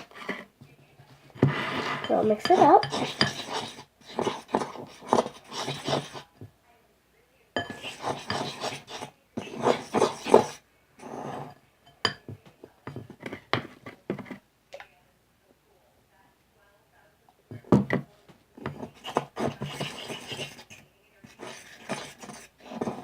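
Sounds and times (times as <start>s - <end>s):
fork stirring slime in bowl: 0.0s - 0.5s, 1.1s - 6.5s, 7.6s - 14.4s, 17.6s - 23.0s
fork clinking against bowl: 7.6s - 9.0s.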